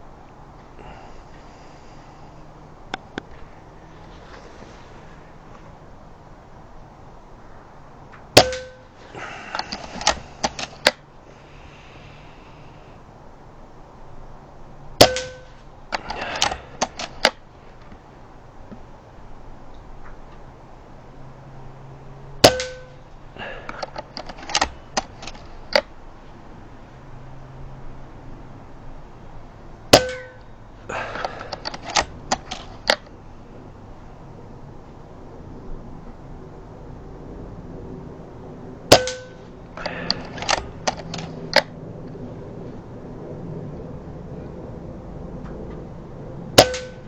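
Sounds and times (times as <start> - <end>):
air rifle shot: 8.4 - 11.0, 15.0 - 17.4, 22.4 - 25.9, 29.9 - 33.1, 38.9 - 41.7, 46.6 - 47.0
rifle action clicking: 9.5 - 11.0, 16.0 - 17.4, 23.7 - 25.9, 31.2 - 33.1, 39.8 - 41.7.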